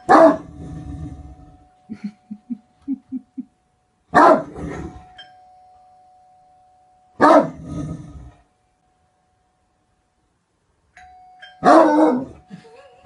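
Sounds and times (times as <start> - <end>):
large dog barking deeply: 0.1 - 0.7, 4.2 - 4.8, 7.2 - 7.8, 11.7 - 12.3.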